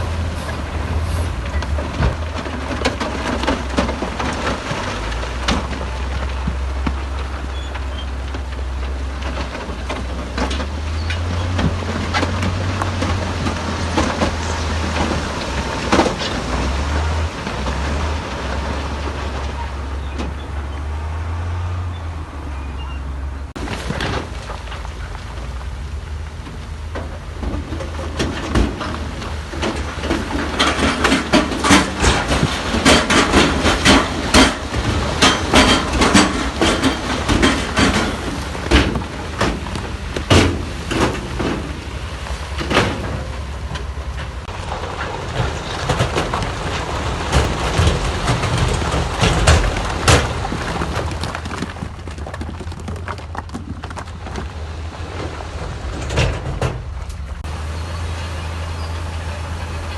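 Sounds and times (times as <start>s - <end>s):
diesel engine drone: 0.0s - 51.2s, 54.1s - 59.9s
stone and steel clattering: 27.1s - 54.1s.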